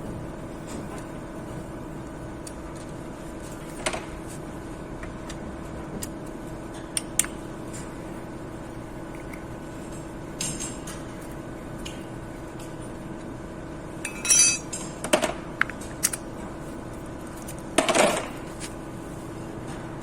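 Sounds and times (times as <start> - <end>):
steady low hum: 0.0 - 20.0
metal tools clinking and clattering: 14.0 - 14.9.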